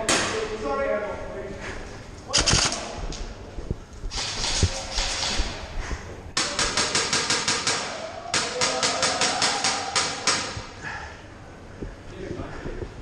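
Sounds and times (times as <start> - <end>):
airsoft rifle shots: 2.3 - 2.8, 6.4 - 10.6.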